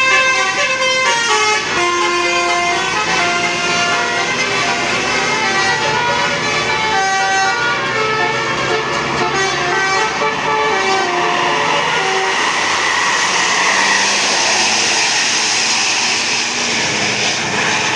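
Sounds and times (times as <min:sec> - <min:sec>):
musical bus horn tune: 0:00.0 - 0:17.8
rushing vehicle noise: 0:00.0 - 0:17.9.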